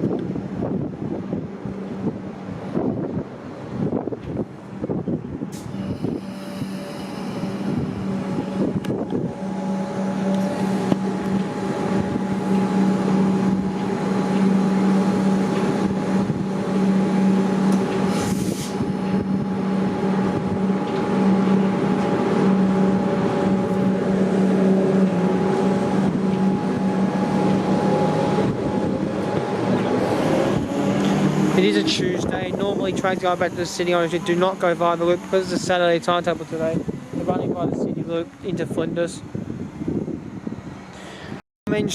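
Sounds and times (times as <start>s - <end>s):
train humming: 0.0s - 40.9s
brief high hiss: 18.1s - 18.8s.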